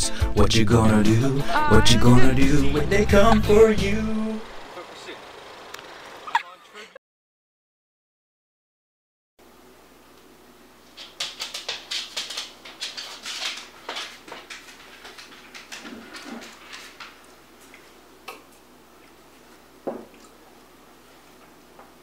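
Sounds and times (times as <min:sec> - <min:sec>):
sharp clicks and clacks: 0:11.0 - 0:17.2.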